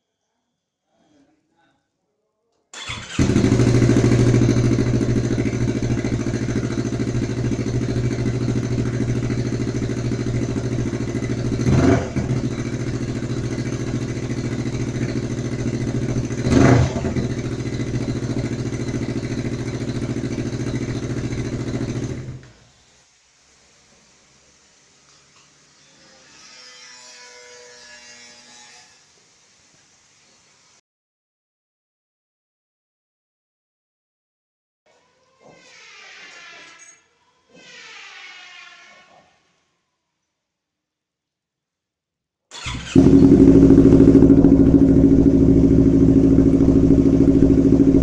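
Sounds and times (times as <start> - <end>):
motorcycle engine idling and revving: 2.8 - 22.5, 42.6 - 48.0.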